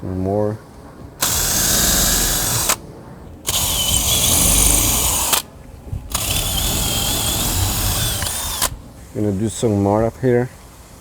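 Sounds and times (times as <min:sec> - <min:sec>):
electric drill boring into wood: 0:01.2 - 0:02.8, 0:03.4 - 0:05.4, 0:06.1 - 0:08.8.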